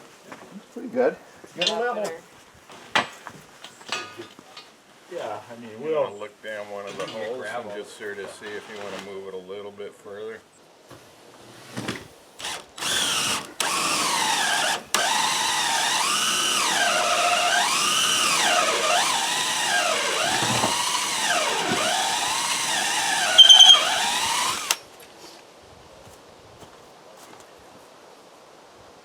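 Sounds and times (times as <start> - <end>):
power drill running: 12.4 - 24.8.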